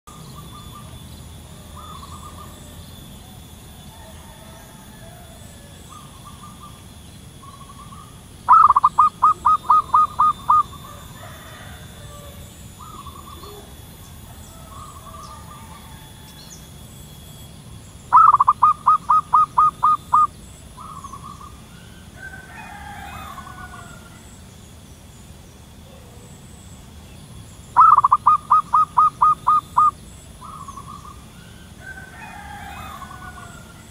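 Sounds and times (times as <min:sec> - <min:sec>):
dove cooing staccato runs: 0:05.9 - 0:16.2, 0:18.1 - 0:22.4, 0:27.8 - 0:31.3.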